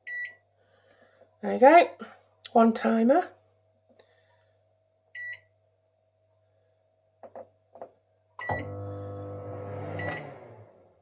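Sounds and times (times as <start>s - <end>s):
short high microwave beep: 8.4s - 8.8s, 10.0s - 10.4s
microwave electrical hum: 8.4s - 11.0s.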